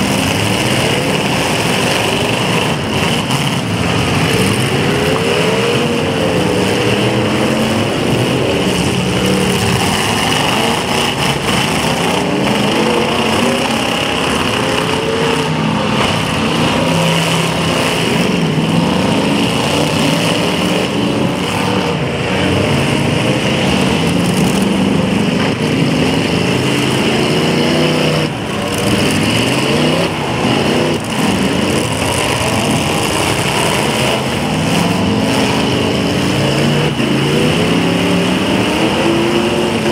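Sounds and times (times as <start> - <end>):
car engines revving: 0.0 - 39.9.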